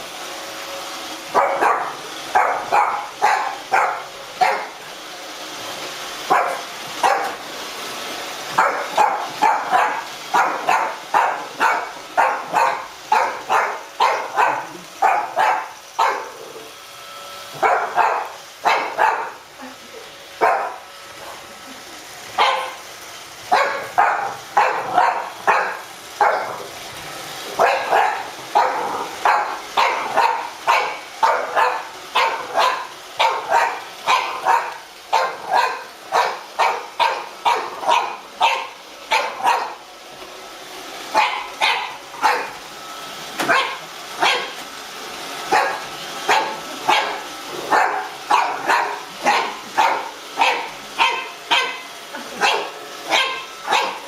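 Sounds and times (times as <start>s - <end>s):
puppy barking: 1.3s - 4.8s, 6.2s - 7.4s, 8.5s - 16.7s, 17.5s - 19.5s, 20.4s - 20.9s, 22.4s - 22.9s, 23.5s - 26.7s, 27.5s - 39.8s, 41.1s - 42.6s, 43.4s - 44.6s, 45.4s - 54.0s.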